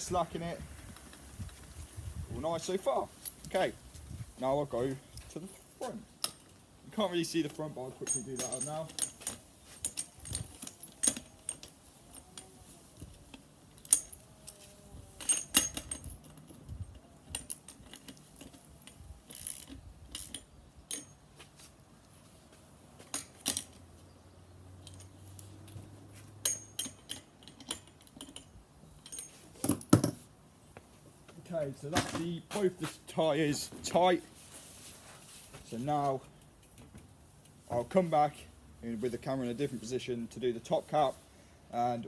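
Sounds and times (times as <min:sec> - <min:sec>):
wrench clicking on axle nuts: 0:17.3 - 0:21.2.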